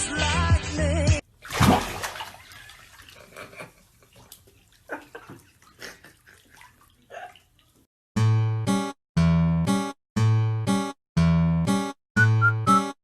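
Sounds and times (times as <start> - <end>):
water sloshing in bathtub: 1.3 - 7.9.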